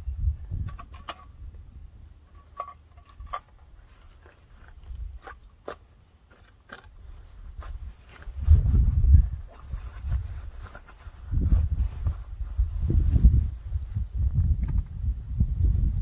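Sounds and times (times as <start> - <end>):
wind on microphone: 0.0 - 2.1, 7.1 - 16.0.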